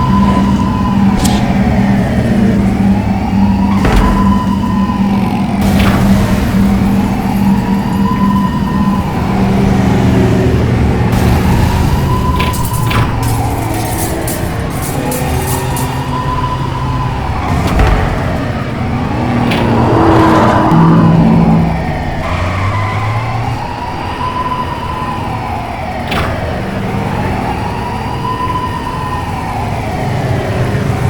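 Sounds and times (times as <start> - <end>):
car engine running: 0.0 - 23.8
police siren wailing: 0.0 - 31.0.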